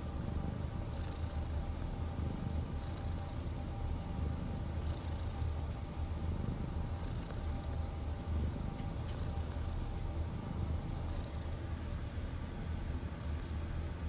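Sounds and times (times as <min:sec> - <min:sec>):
cat snoring: 0:00.9 - 0:03.5, 0:04.2 - 0:09.9, 0:10.5 - 0:11.7.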